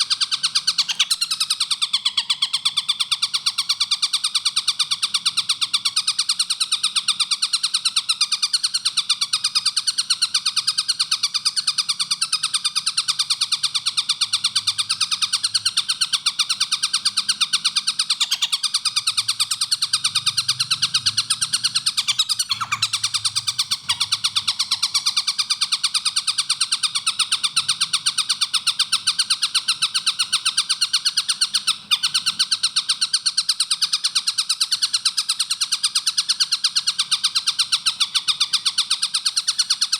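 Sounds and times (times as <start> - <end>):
kingfisher rapid chattering call: 0.0 - 1.4, 15.5 - 25.9.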